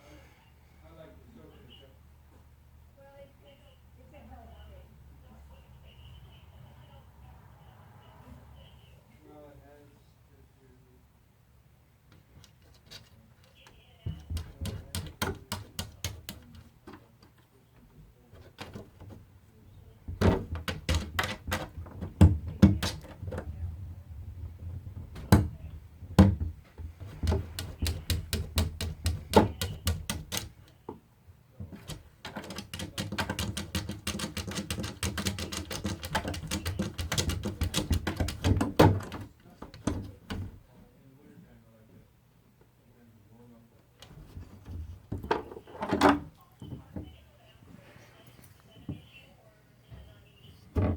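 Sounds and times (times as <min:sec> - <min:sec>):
plastic cat flap rattling: 0:20.1 - 0:30.6, 0:31.6 - 0:40.6.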